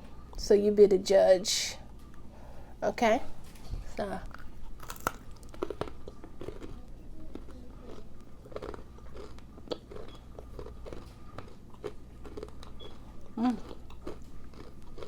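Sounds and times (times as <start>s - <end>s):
crunchy chewing: 4.2s - 15.0s.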